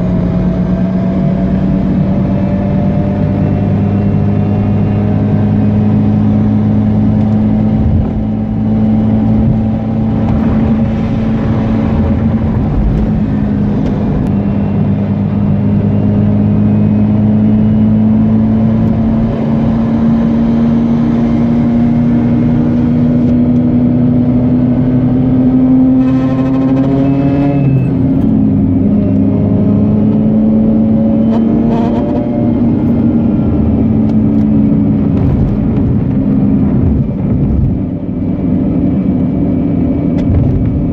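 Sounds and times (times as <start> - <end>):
rotary engine revving hard: 24.2 - 34.8.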